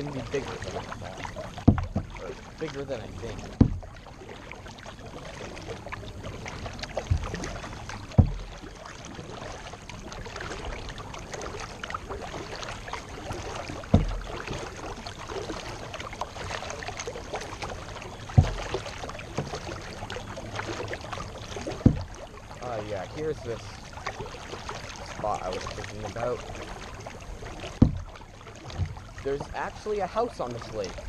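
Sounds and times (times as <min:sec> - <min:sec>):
paddle sloshing in water: 0:00.0 - 0:31.0
low thumps: 0:01.6 - 0:02.2, 0:03.1 - 0:04.0, 0:06.8 - 0:08.7, 0:13.8 - 0:14.4, 0:18.2 - 0:19.5, 0:21.7 - 0:22.2, 0:27.7 - 0:29.8.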